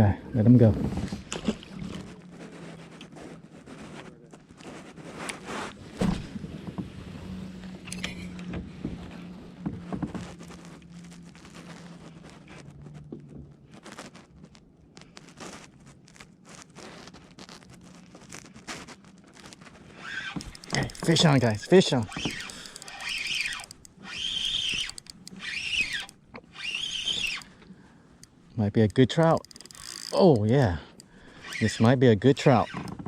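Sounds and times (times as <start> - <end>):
fishing gear knocking and clicking: 20.2 - 27.6, 28.2 - 31.9.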